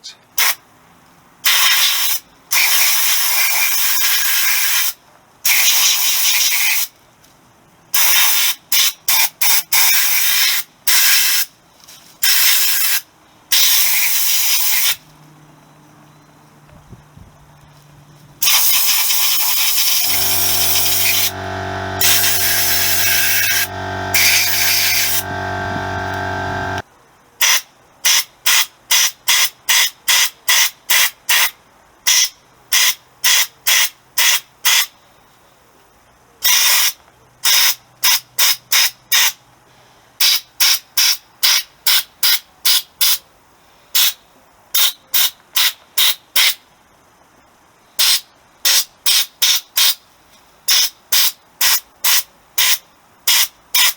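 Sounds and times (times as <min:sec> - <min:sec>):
air compressor motor running: 0:19.7 - 0:26.8
soda blaster short blasts: 0:20.0 - 0:26.8.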